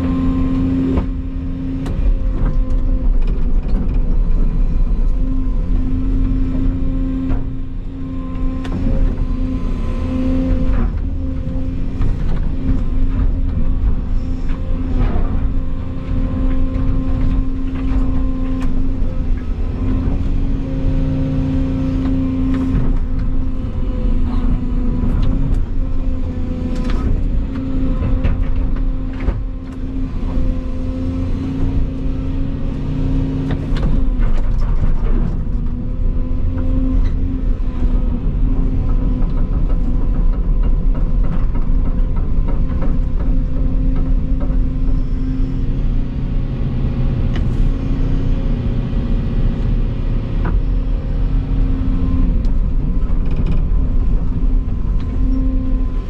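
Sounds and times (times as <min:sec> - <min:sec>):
excavator diesel engine running: 0:00.0 - 0:56.0
machine knocks and clatters: 0:22.0 - 0:30.6, 0:38.3 - 0:45.8.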